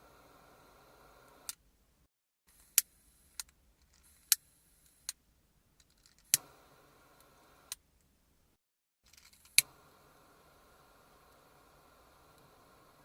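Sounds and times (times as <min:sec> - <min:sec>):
lighter hissing: 0:00.0 - 0:01.6, 0:06.3 - 0:07.8, 0:09.5 - 0:13.0.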